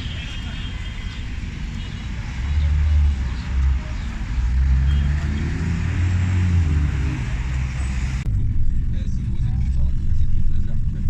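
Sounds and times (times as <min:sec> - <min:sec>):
traffic rumble and hiss: 0:00.0 - 0:11.0
car engine droning: 0:00.4 - 0:11.0.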